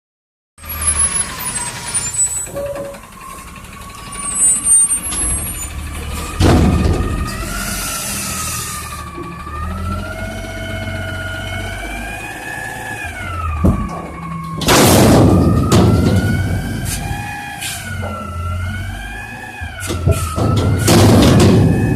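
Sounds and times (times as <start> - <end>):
garbage truck engine whining: 0.6 - 21.9
loud clatter: 13.6 - 17.3, 19.9 - 21.9.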